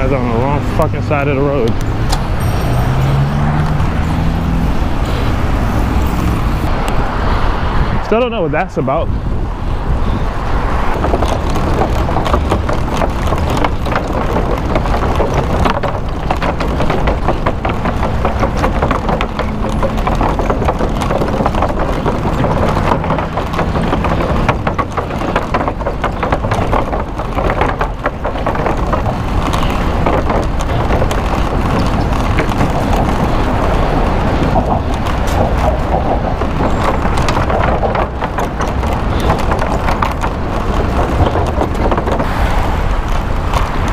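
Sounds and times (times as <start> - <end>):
wind and road noise: 0.0 - 43.9
small knocks and rattles: 10.8 - 42.3, 43.0 - 43.9.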